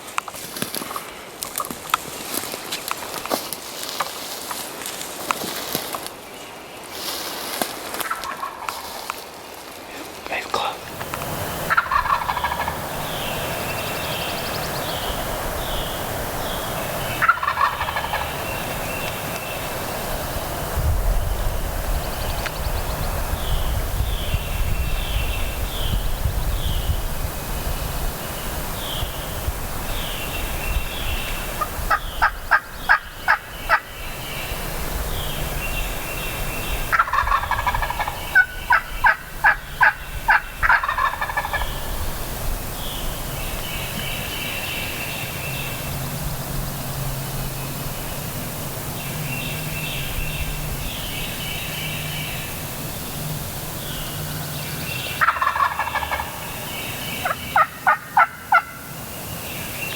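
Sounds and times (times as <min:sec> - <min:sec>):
wild turkey calling: 0:08.0 - 0:09.3, 0:09.9 - 0:20.6, 0:28.7 - 0:45.8, 0:49.0 - 0:59.2
wind noise: 0:10.6 - 0:59.2.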